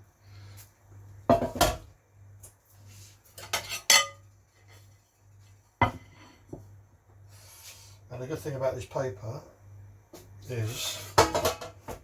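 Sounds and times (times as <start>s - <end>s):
metal kitchenware clattering: 3.4s - 4.3s, 11.1s - 12.0s.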